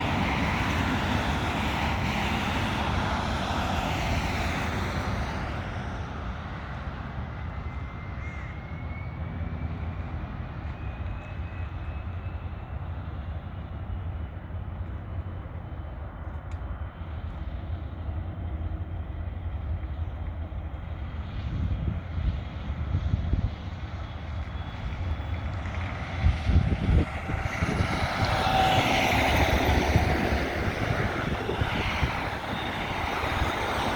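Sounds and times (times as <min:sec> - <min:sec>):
jet engines roaring: 0:00.0 - 0:33.9
wind buffeting microphone: 0:13.0 - 0:33.9.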